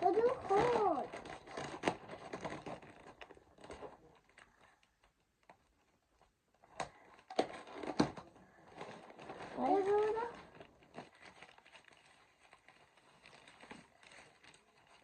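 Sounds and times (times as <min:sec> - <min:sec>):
packaging rustling and crinkling: 0:00.0 - 0:15.0.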